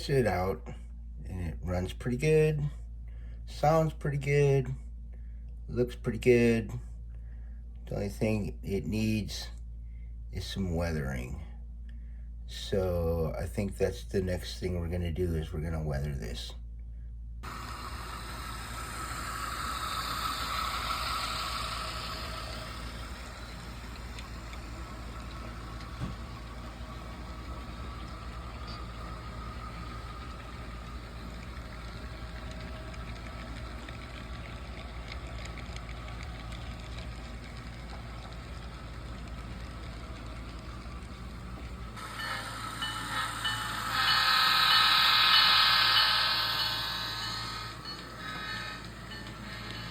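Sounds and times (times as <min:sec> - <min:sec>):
steady low hum: 0:00.0 - 0:49.9
diesel locomotive sounds: 0:17.4 - 0:49.9.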